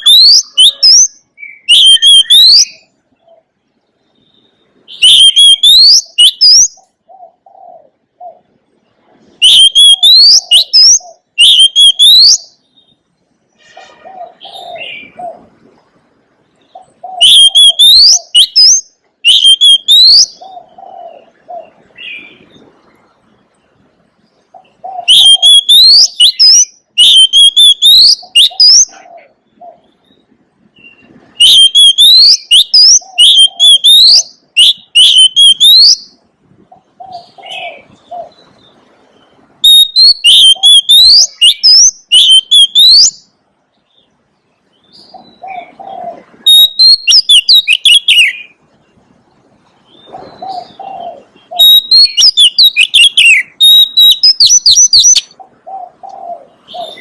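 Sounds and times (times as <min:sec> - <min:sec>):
bird singing whistled phrases: 0:00.0 - 0:02.9, 0:04.2 - 0:06.9, 0:09.4 - 0:13.0, 0:17.0 - 0:20.4, 0:25.0 - 0:29.0, 0:30.8 - 0:36.2, 0:39.6 - 0:43.3, 0:46.4 - 0:48.6, 0:50.1 - 0:55.4.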